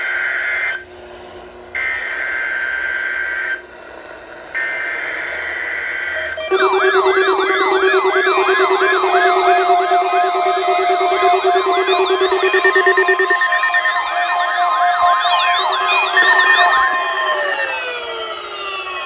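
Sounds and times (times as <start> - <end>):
siren-like electronic alarm: 6.1 - 19.0
two-tone digital data screech: 6.2 - 19.0.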